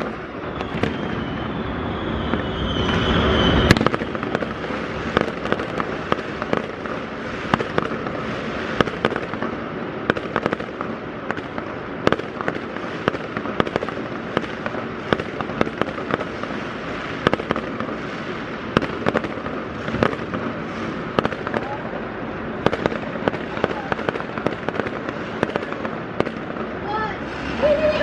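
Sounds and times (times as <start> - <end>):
fireworks crackling and booming: 0.0 - 28.0.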